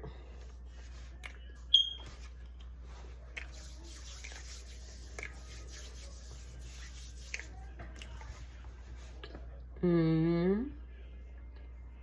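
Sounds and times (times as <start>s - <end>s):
faint rubbing or scraping: 2.9s - 9.2s.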